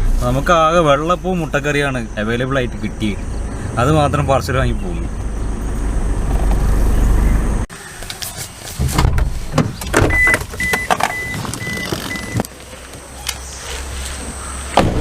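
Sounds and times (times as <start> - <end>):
road rumble inside car: 0.0 - 7.7
clicks and knocks in car: 8.8 - 12.4.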